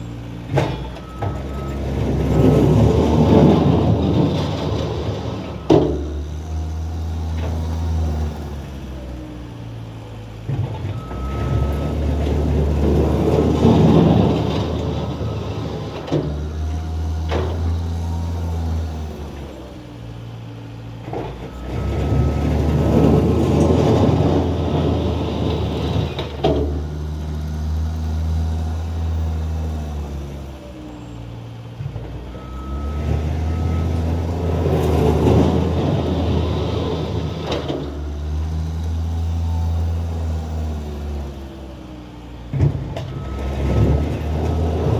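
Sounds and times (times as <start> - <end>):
blade scraping pavement: 0.0 - 6.4, 10.7 - 19.6, 21.2 - 27.3, 32.9 - 39.0
skid steer engine revving: 0.0 - 44.9.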